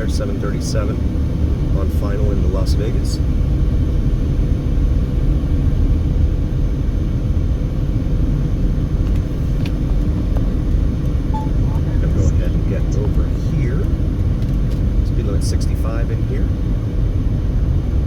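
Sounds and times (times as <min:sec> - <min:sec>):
faint steady hum: 0:00.0 - 0:14.2
road noise inside car: 0:00.0 - 0:18.0.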